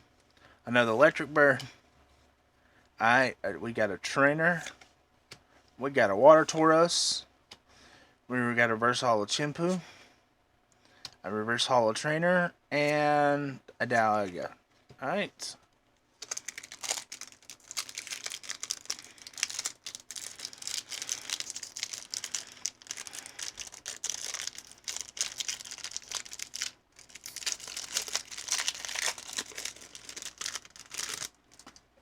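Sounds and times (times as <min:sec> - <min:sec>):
foil wrapper crinkling and tearing: 0:16.2 - 0:31.8.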